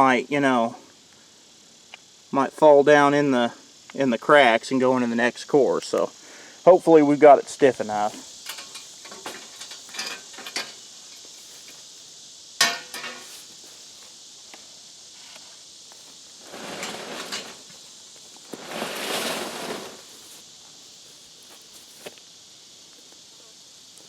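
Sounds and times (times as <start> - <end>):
insect chirring: 0.0 - 24.0
rough scraping and shuffling: 7.9 - 12.1, 12.7 - 14.2, 15.2 - 22.2
sharp metallic clank: 12.6 - 13.3.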